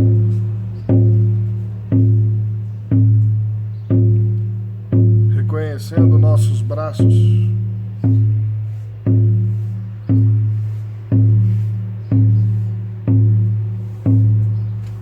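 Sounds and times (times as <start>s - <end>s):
deep booming drum beats: 0.0s - 15.0s.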